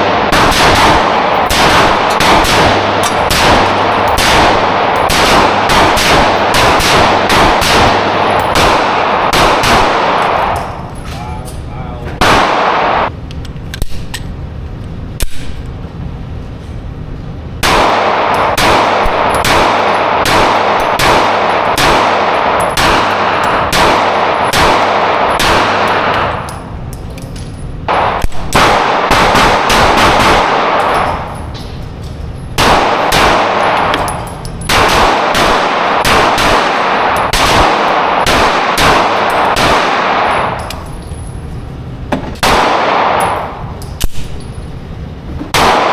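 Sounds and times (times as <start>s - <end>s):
rapid rifle gunfire: 0.0s - 10.6s, 12.2s - 13.1s, 17.6s - 26.5s, 27.9s - 31.3s, 32.6s - 34.1s, 34.7s - 40.6s, 42.4s - 44.4s, 45.5s - 45.9s
metallic clanging: 1.0s - 9.3s, 30.8s - 35.8s.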